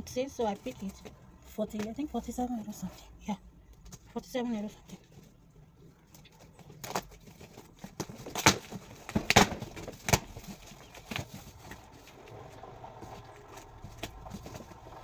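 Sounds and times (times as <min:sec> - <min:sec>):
cardboard scraping and rustling: 0:06.2 - 0:15.0.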